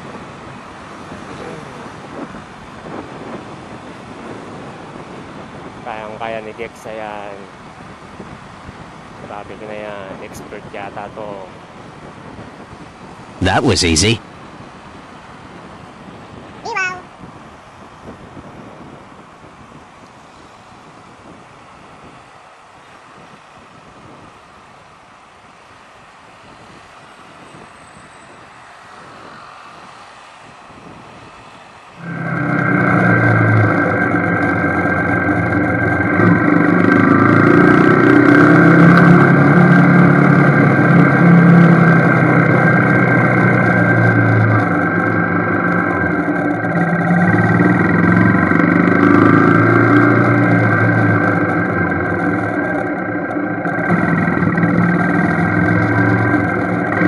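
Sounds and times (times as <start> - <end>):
faint rumble: 32.0 - 57.0
motorcycle engine running: 32.0 - 57.0.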